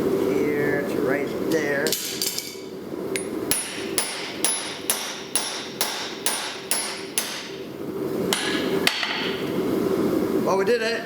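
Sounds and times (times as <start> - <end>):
hammer striking punch on anvil: 3.5 - 7.6, 8.3 - 9.4.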